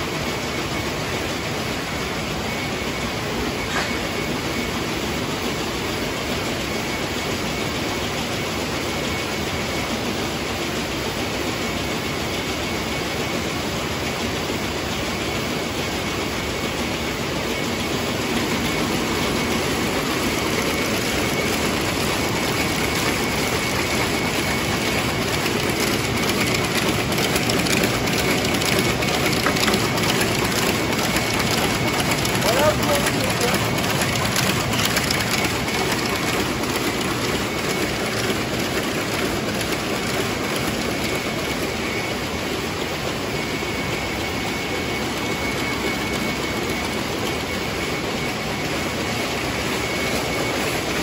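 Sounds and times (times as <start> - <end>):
weaving looms clattering: 14.2 - 51.0.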